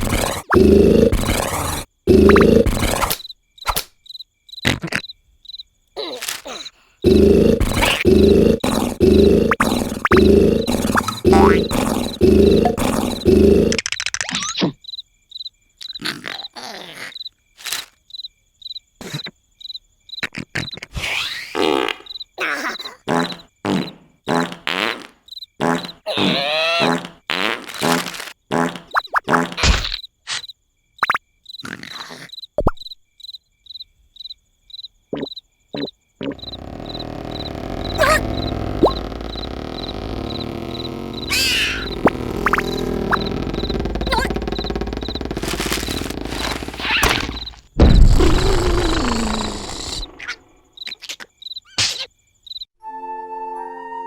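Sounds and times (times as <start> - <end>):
cartoon snoring: 0.0 - 3.2, 6.0 - 13.9, 16.0 - 17.2, 22.4 - 25.0, 25.6 - 27.2, 35.2 - 50.4
crickets chirping: 0.0 - 20.9, 21.6 - 24.6, 25.2 - 27.0, 28.5 - 52.8
short sound effects: 36.3 - 50.1
sharp thump: 46.8 - 48.6.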